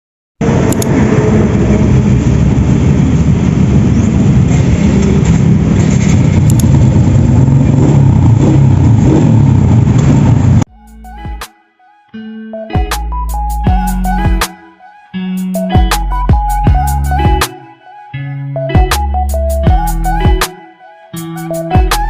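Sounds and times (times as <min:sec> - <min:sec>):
road vehicle rumbling: 0:00.4 - 0:10.7.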